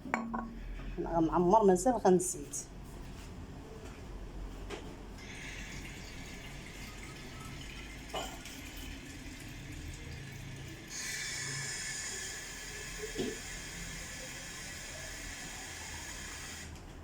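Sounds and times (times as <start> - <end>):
water pouring into a bottle: 5.2 - 16.5.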